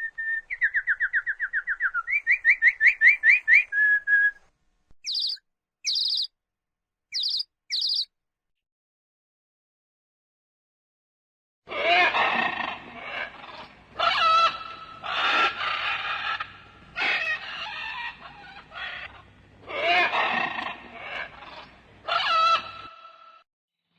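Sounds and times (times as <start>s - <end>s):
quieter animal calls: 5.0s - 6.3s, 7.2s - 8.1s, 11.7s - 23.0s
animal crying with wavering pitch: 5.1s - 6.3s, 7.2s - 8.0s.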